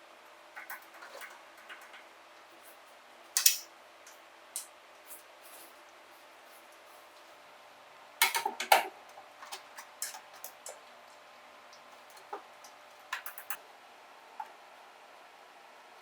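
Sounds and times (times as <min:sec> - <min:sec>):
clicks and knocks of objects handled: 0:03.4 - 0:05.3, 0:08.2 - 0:10.8, 0:11.8 - 0:13.6.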